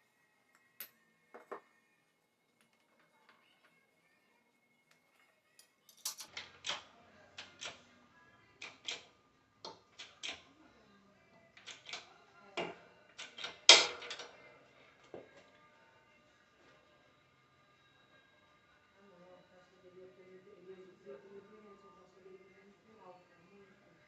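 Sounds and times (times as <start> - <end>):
metal tools clicking and knocking: 5.5 - 7.8, 8.6 - 9.1, 9.7 - 10.4, 11.6 - 14.3.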